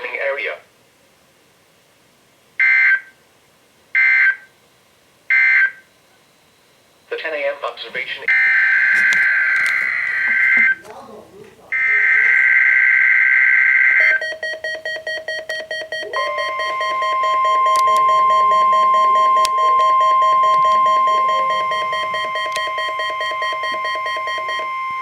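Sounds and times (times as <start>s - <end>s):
steady high alarm tone: 8.2s - 10.8s, 11.7s - 25.0s
rapid beep pulsing: 13.8s - 25.0s
warbling data burst: 15.6s - 25.0s.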